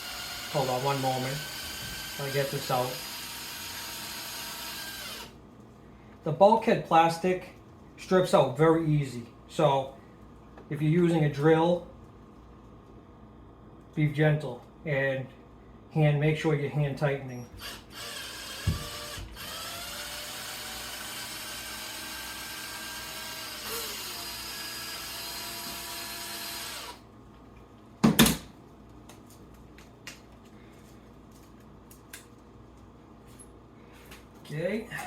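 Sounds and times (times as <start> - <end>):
cordless drill driving a screw: 0.0 - 5.3, 17.6 - 27.0.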